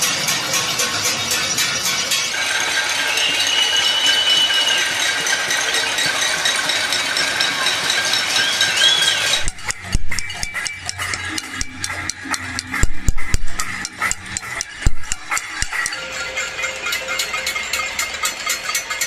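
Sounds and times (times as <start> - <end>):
pots and pans banging: 0.0 - 19.0
high held tone: 8.4 - 18.4.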